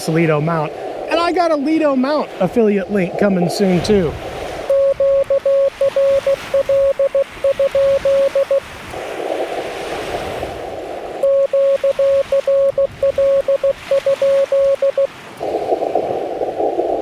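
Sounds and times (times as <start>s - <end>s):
morse code tone: 4.7s - 8.6s, 11.2s - 15.1s.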